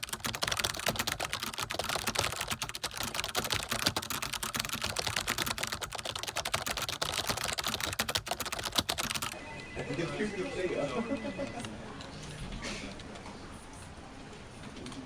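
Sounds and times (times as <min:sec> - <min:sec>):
keyboard typing clatter: 0:00.0 - 0:09.4.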